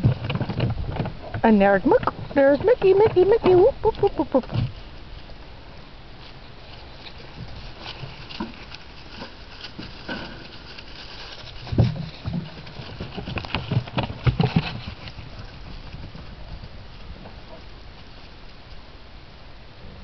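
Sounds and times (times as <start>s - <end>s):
dogs' running footfalls: 7.0s - 18.2s.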